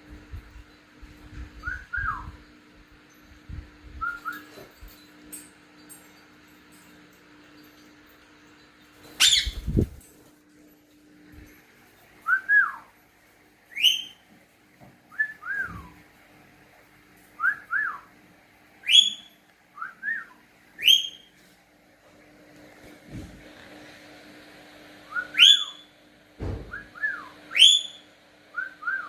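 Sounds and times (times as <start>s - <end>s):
parrot rising whistle: 1.6s - 2.4s, 9.2s - 9.6s, 13.7s - 14.2s, 15.1s - 16.0s, 18.8s - 21.3s, 25.1s - 25.9s, 26.7s - 29.0s
thump: 26.4s - 26.8s.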